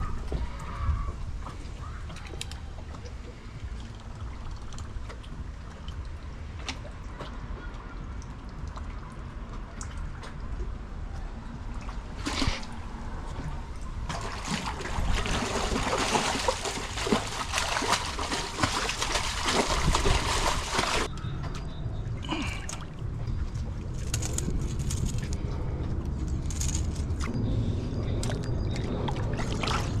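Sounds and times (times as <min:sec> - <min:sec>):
fish splashing in water: 0:11.7 - 0:13.2, 0:13.9 - 0:21.1.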